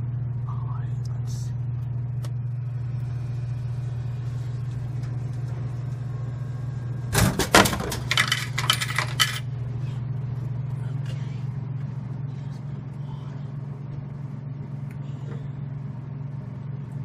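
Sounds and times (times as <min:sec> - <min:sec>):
steady low hum: 0:00.0 - 0:17.0
bottle thudding into vending machine bin: 0:07.1 - 0:08.2
clicks and clatter: 0:07.2 - 0:09.4.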